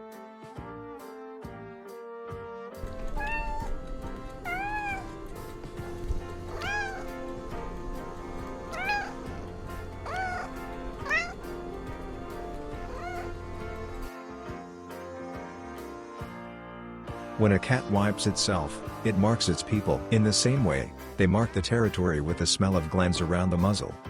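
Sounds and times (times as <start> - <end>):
background music: 0.0 - 24.0
cat meowing: 2.8 - 14.1.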